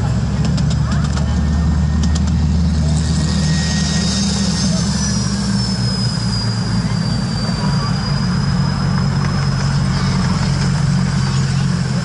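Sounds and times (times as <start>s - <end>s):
diesel locomotive engine droning: 0.0s - 12.0s
thin high whine: 1.4s - 11.6s.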